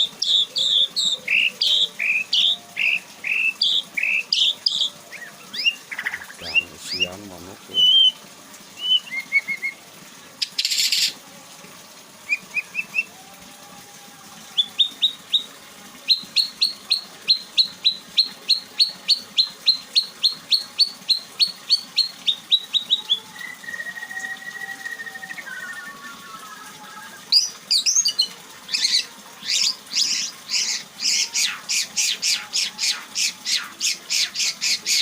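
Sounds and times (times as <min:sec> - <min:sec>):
songbird singing: 0:00.0 - 0:08.2.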